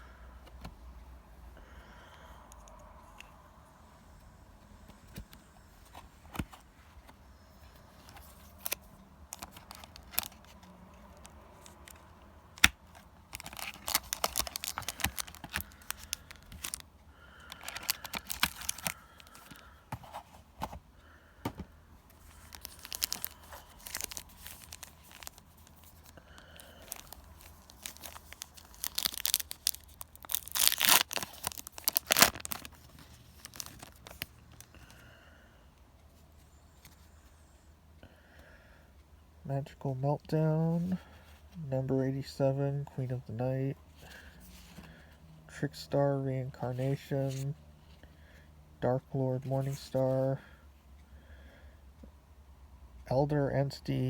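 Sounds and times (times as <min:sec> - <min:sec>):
wrappers tearing and crinkling: 0:08.5 - 0:10.5, 0:12.6 - 0:16.8, 0:17.5 - 0:19.6, 0:22.3 - 0:34.4.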